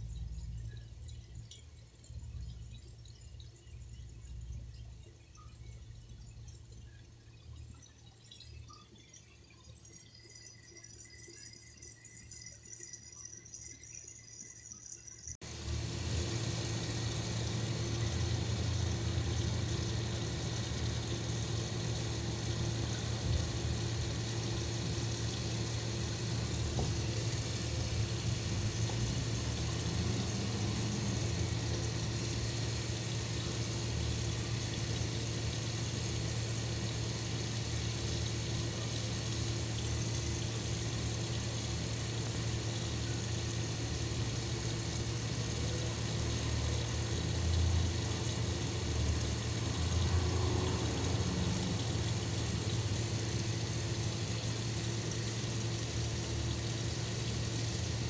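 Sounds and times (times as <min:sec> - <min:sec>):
water running: 0:12.2 - 0:58.0.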